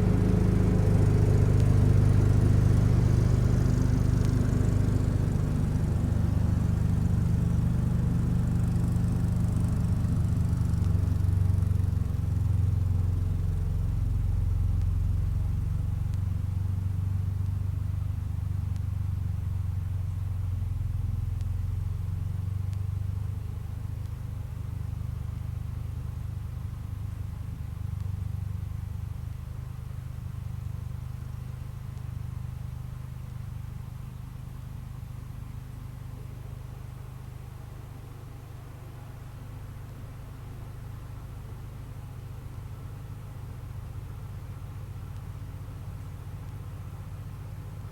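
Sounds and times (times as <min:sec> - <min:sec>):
tractor engine running: 0:00.0 - 0:12.3.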